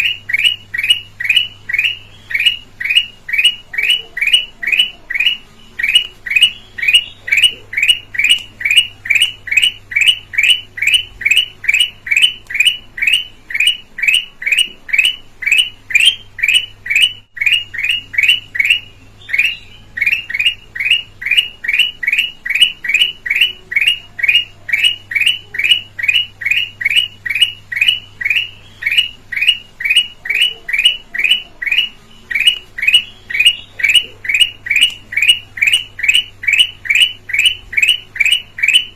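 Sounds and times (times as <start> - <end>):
bulbul calling: 0.0 - 38.9.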